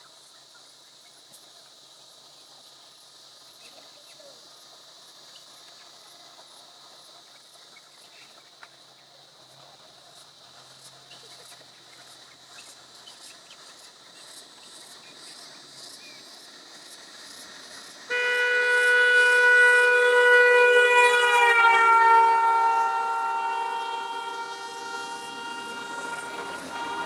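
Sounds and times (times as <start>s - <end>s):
vehicle horn blast: 18.1s - 27.0s.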